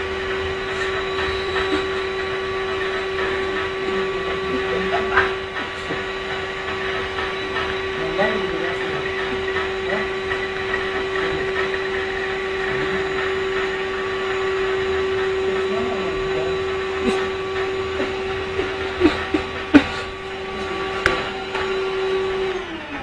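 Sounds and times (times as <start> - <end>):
vacuum cleaner motor whining: 0.0 - 23.0.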